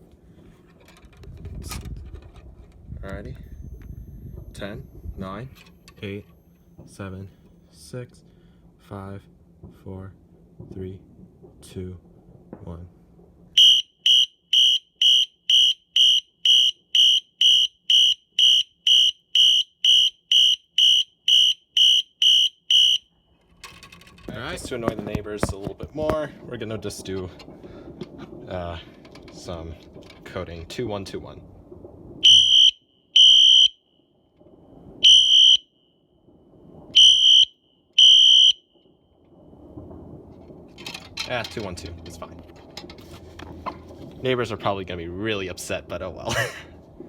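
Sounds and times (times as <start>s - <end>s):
fire alarm horn pulsing: 13.6s - 23.1s, 32.2s - 33.8s, 35.0s - 35.6s, 37.0s - 38.6s.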